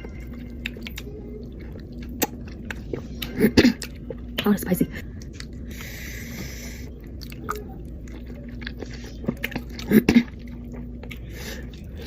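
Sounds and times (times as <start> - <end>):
person chewing food: 0.0 - 4.4, 5.0 - 12.0
steady low hum: 0.0 - 12.0.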